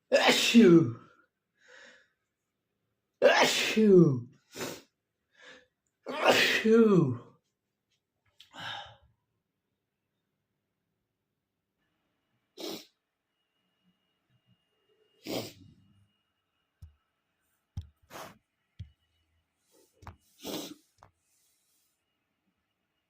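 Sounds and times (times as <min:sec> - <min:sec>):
man sneezing: 0:00.1 - 0:01.0, 0:03.2 - 0:04.8, 0:06.1 - 0:07.2
breathing: 0:01.1 - 0:02.2, 0:04.5 - 0:05.8, 0:08.5 - 0:09.1.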